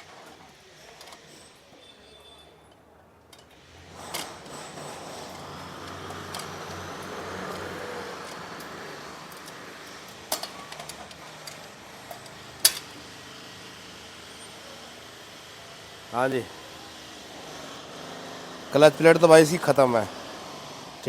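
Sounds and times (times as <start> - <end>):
metal tools clinking: 0.9 - 13.0.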